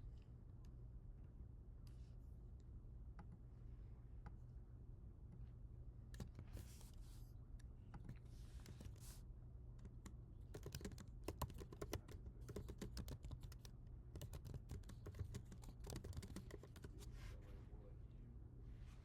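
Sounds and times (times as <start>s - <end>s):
computer keyboard clicks: 9.8s - 17.0s.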